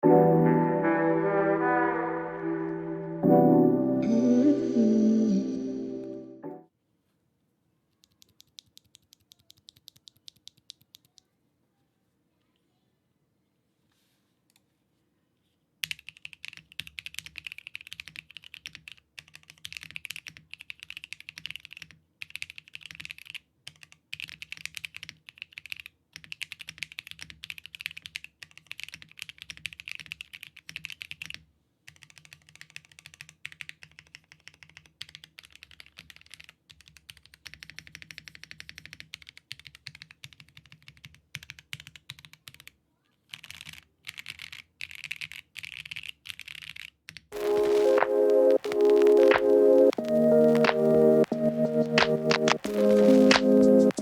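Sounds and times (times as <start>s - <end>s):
mechanical keyboard typing: 15.8s - 50.9s.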